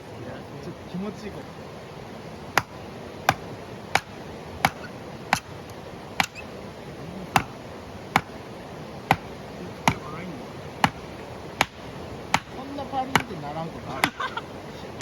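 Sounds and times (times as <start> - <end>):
firewood being split by hand: 2.6 - 6.4.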